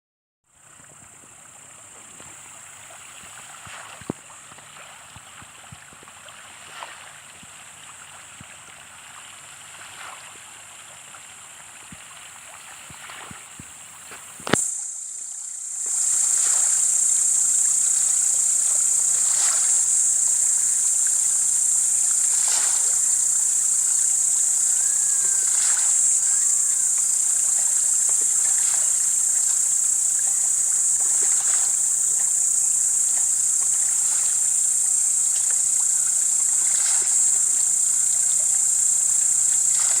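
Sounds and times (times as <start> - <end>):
high-pitched insect chorus: 0.5 - 40.0
fish splashing at water surface: 2.2 - 8.8, 12.0 - 14.6, 15.8 - 17.0, 17.6 - 32.3, 36.6 - 37.6.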